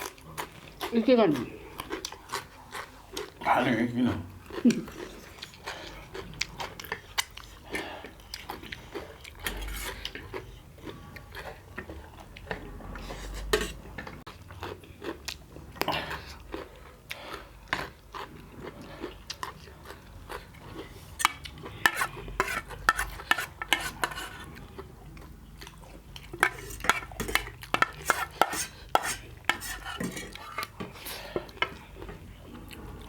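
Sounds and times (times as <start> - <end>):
food being stirred: 8.4 - 14.4, 17.6 - 33.0
cutlery clinking against a dish: 21.2 - 24.5, 26.3 - 31.8.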